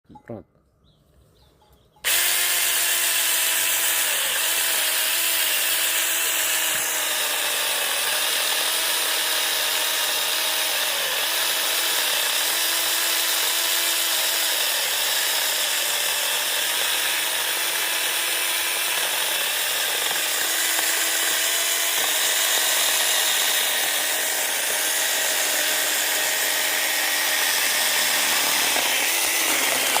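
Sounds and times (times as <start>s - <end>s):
mini chainsaw cutting wood: 2.0s - 30.0s
chain rasping in wood: 27.5s - 30.0s.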